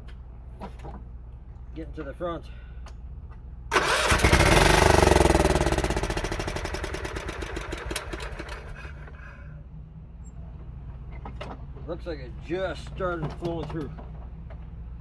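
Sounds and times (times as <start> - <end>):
electric starter cranking engine: 3.7 - 9.1.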